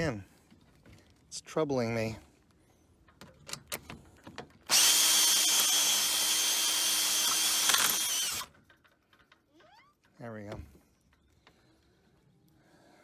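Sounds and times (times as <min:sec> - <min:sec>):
power drill drilling metal: 0:04.7 - 0:08.6.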